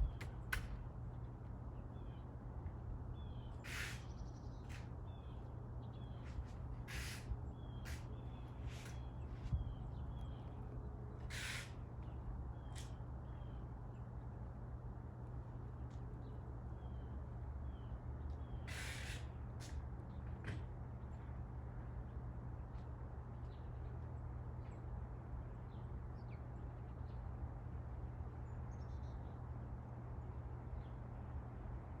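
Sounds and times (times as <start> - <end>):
low outdoor rumble: 0.0 - 32.0.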